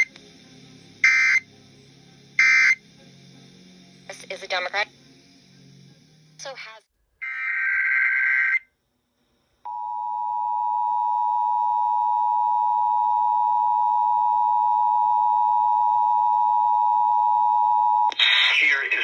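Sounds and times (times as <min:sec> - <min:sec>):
warbling data burst: 0:01.0 - 0:01.4, 0:02.4 - 0:02.8
two-tone alert signal: 0:02.4 - 0:02.8.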